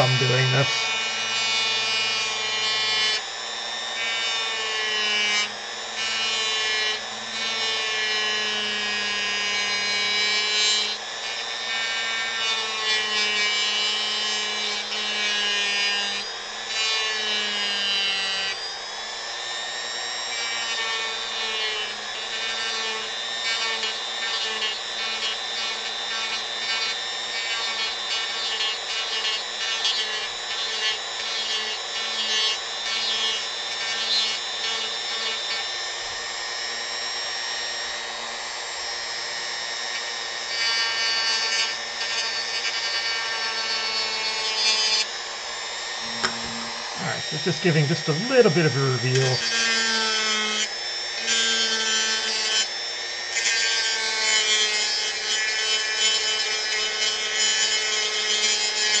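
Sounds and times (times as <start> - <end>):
bit rasping on wood: 0.0 - 3.2, 20.3 - 35.7, 53.4 - 59.0
rotary tool whining: 0.0 - 59.0.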